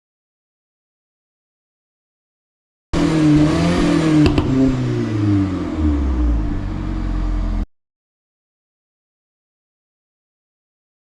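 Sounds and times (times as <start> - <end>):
car engine revs falling: 3.0 - 7.6
exhaust pops: 3.8 - 4.8.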